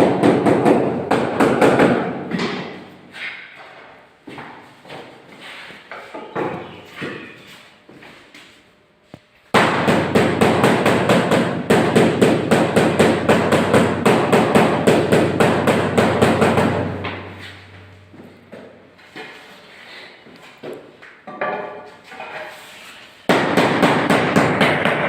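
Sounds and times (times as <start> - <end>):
hammer striking floor tiles: 23.3 - 25.0.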